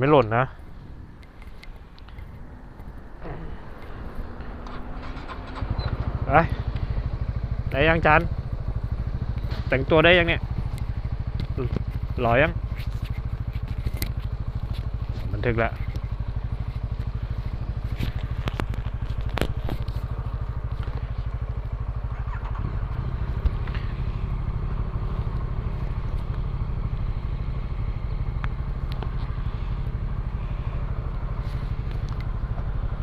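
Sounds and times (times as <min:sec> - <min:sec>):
motorcycle engine idling: 0:00.0 - 0:33.0.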